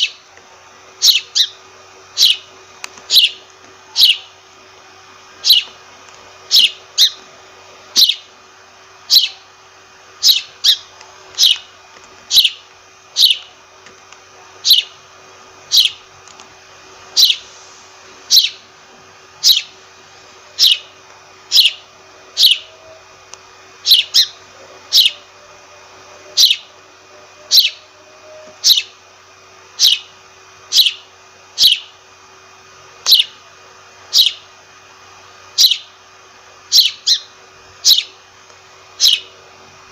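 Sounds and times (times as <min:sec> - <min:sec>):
sparrow chirping: 0:00.0 - 0:00.2, 0:01.0 - 0:02.5, 0:03.1 - 0:04.4, 0:05.4 - 0:05.8, 0:06.5 - 0:07.2, 0:07.9 - 0:08.3, 0:09.0 - 0:09.5, 0:10.2 - 0:11.7, 0:12.3 - 0:13.5, 0:14.6 - 0:15.0, 0:15.6 - 0:16.0, 0:17.1 - 0:17.5, 0:18.3 - 0:18.6, 0:19.4 - 0:19.8, 0:20.5 - 0:20.9, 0:21.5 - 0:22.8, 0:23.8 - 0:25.3, 0:26.2 - 0:26.7, 0:27.4 - 0:27.9, 0:28.5 - 0:29.0, 0:29.8 - 0:30.1, 0:30.7 - 0:32.0, 0:33.0 - 0:33.4, 0:34.1 - 0:34.5, 0:35.6 - 0:36.0, 0:36.7 - 0:38.2, 0:39.0 - 0:39.3.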